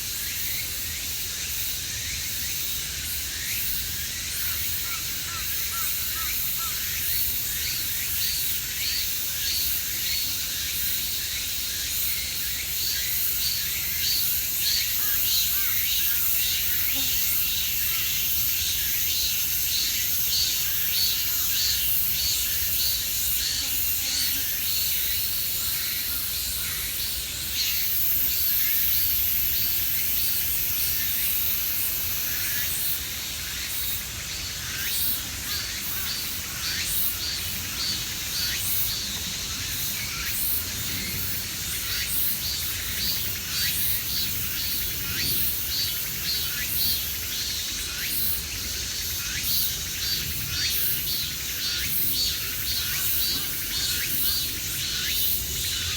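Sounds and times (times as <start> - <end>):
insects trilling in chorus: 0.0 - 55.9.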